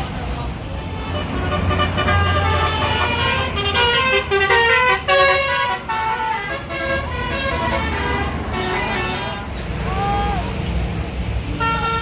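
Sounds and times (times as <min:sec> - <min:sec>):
road traffic rumble: 0:00.0 - 0:12.0
melodic bus air horn: 0:00.8 - 0:09.6, 0:11.5 - 0:12.0.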